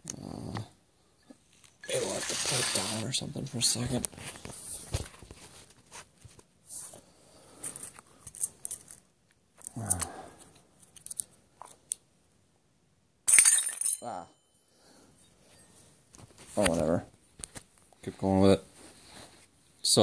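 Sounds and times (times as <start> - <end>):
metal parts scraping and clicking: 1.8 - 3.1, 7.6 - 9.0.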